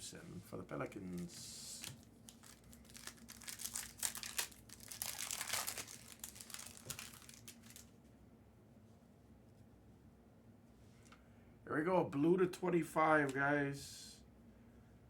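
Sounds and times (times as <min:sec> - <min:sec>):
foil wrapper crinkling: 0:01.1 - 0:08.0.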